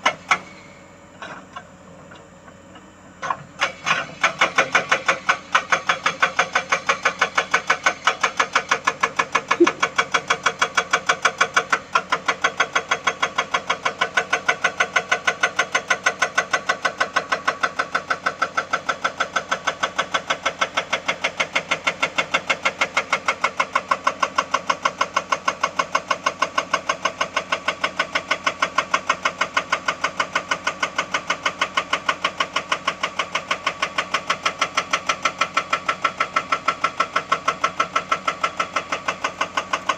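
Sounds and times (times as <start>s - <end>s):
excavator engine running: 9.5s - 10.5s.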